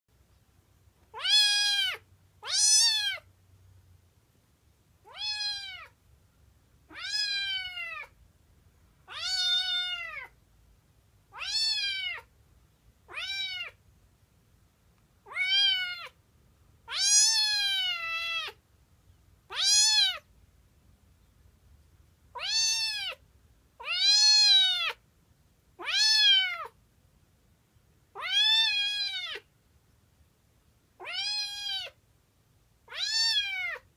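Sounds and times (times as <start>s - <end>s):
kitten meowing: 1.1s - 3.2s, 5.0s - 6.0s, 6.9s - 8.2s, 9.1s - 10.4s, 11.3s - 12.3s, 13.1s - 13.8s, 15.2s - 16.2s, 16.9s - 18.6s, 19.5s - 20.3s, 22.3s - 23.2s, 23.8s - 25.0s, 25.8s - 26.8s, 28.1s - 29.5s, 31.0s - 32.0s, 32.9s - 33.9s.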